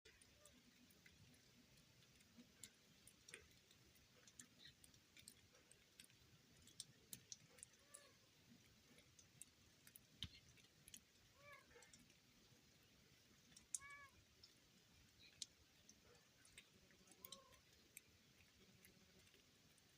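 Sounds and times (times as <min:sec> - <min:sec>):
faint ticks and clicks: 0:00.1 - 0:19.9
faint animal calls: 0:07.4 - 0:08.3, 0:11.2 - 0:12.1, 0:13.6 - 0:14.2, 0:16.0 - 0:17.8.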